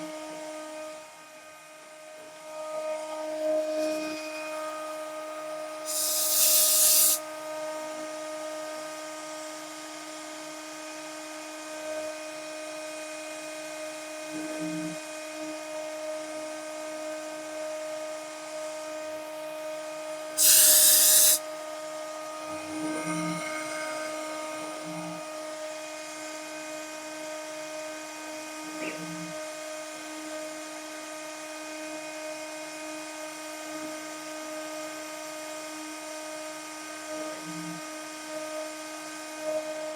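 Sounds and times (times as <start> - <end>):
loud bursts of hiss: 5.9 - 7.2, 20.4 - 21.4
milling machine spindle whine: 5.9 - 7.2, 20.4 - 21.4.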